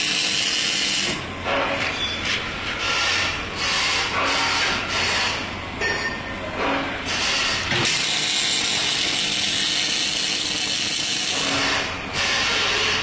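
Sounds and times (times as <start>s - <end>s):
welding arc crackling hiss: 0.0s - 1.2s, 7.2s - 12.6s.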